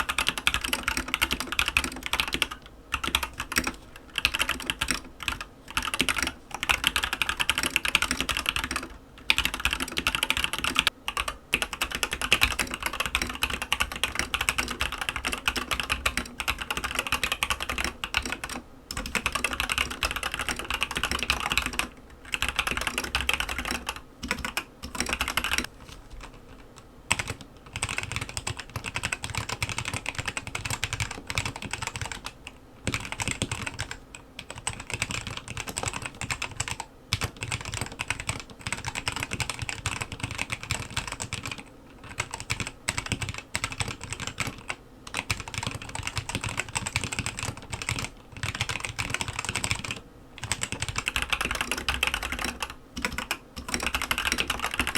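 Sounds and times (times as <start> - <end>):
mechanical keyboard typing: 0.0 - 54.9.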